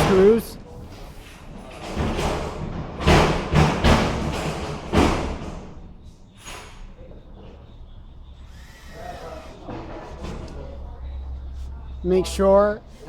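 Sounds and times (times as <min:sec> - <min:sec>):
heavy thumps and knocks: 0:00.0 - 0:00.6, 0:01.8 - 0:05.8.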